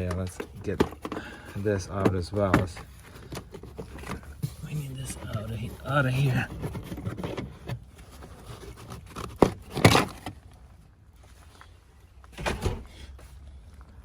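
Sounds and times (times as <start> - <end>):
knocks and clunks: 0.0 - 10.3, 12.4 - 13.0.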